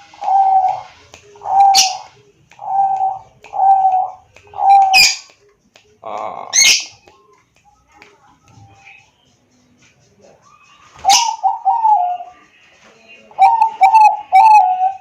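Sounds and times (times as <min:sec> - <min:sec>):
dove cooing: 0:00.0 - 0:05.3, 0:10.4 - 0:12.4, 0:13.4 - 0:15.0.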